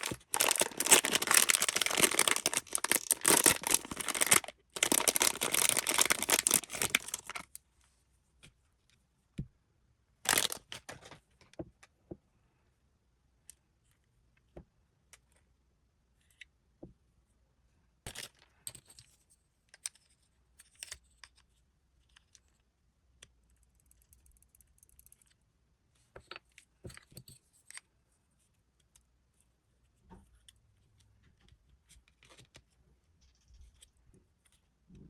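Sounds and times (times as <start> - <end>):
plastic toy pieces clicking: 0.0 - 7.4
packaging crinkling: 0.0 - 7.5, 10.3 - 10.7.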